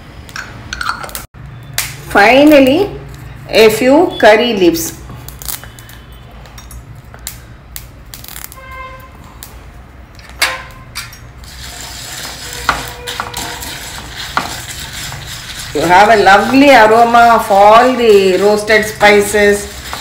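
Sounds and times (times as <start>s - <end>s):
spatula scraping in pan: 11.4s - 20.0s.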